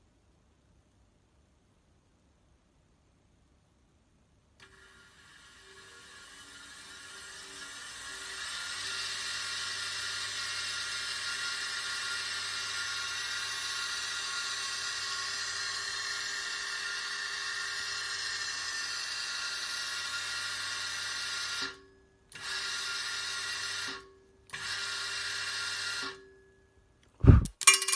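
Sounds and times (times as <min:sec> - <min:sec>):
lathe motor whining: 0:04.7 - 0:21.7.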